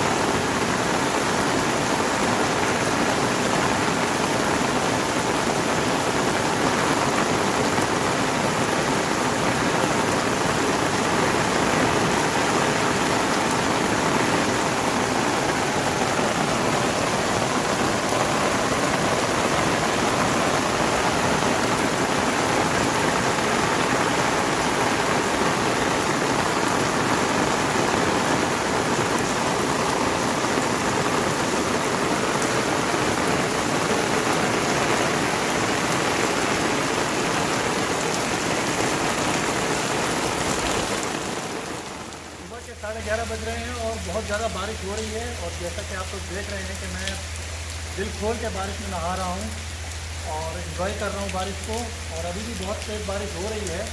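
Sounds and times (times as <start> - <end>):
heavy rain pattering: 0.0 - 53.9.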